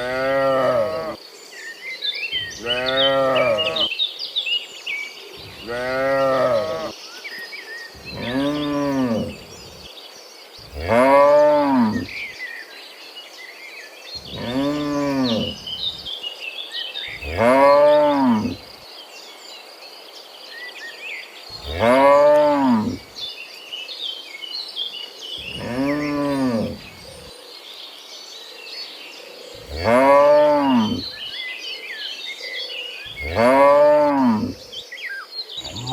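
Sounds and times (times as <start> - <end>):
cattle mooing: 0.0 - 1.2, 2.5 - 3.9, 5.4 - 6.9, 8.0 - 9.8, 10.7 - 12.2, 14.2 - 16.1, 17.2 - 18.7, 21.6 - 23.0, 25.4 - 27.0, 29.6 - 31.2, 33.1 - 34.6, 35.6 - 35.9.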